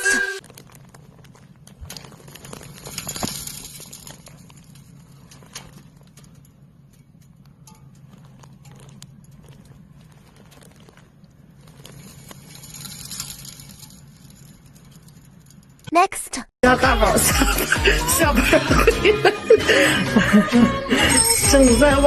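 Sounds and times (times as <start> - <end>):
egg crackling on ice: 0.0 - 15.9.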